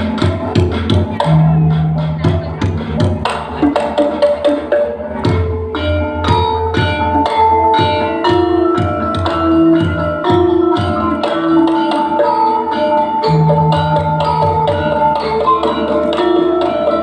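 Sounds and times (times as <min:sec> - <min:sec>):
low bass line: 0:00.0 - 0:04.1
pitched percussion music: 0:00.0 - 0:17.0.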